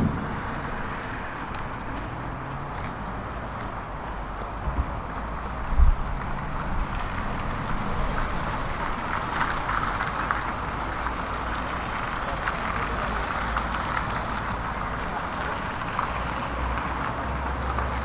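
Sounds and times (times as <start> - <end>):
diesel engine running: 0.0 - 5.4.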